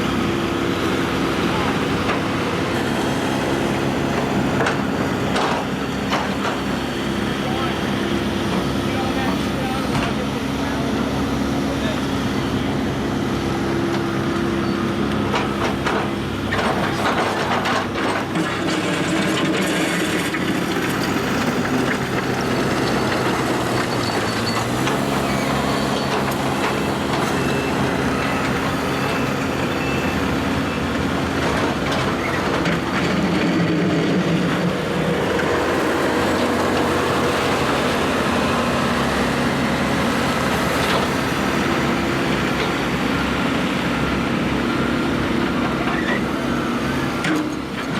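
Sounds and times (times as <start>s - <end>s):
excavator diesel engine running: 0.0s - 47.9s
knocks and clanks: 4.2s - 6.8s, 15.2s - 29.3s.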